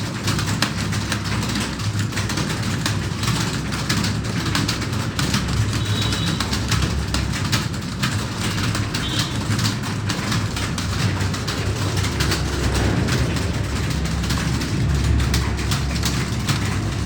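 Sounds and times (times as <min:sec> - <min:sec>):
keyboards clattering: 0:00.0 - 0:17.0
steady low hum: 0:09.8 - 0:17.0.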